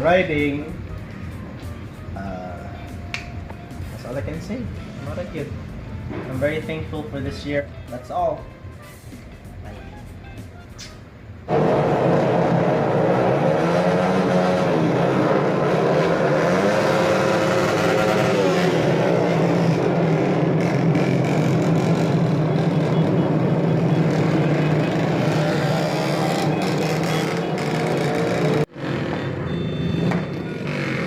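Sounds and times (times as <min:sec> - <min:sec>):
engine running and revving: 0:11.5 - 0:31.0.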